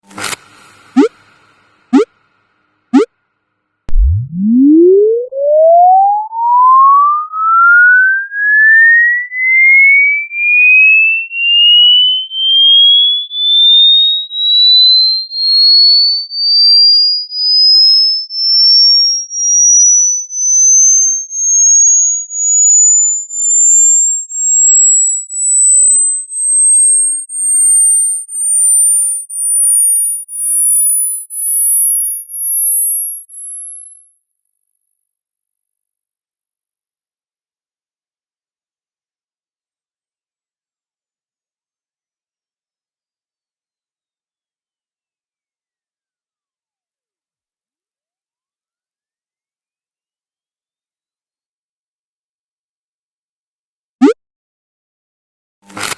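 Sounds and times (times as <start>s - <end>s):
pulsing sine tone sweeping upward: 3.9s - 10.9s, 19.6s - 39.1s.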